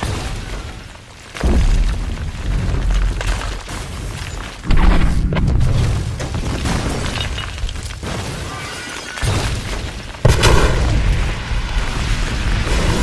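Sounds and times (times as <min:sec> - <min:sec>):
debris crackling: 0:00.0 - 0:13.0
heavy explosion boom: 0:10.2 - 0:13.0.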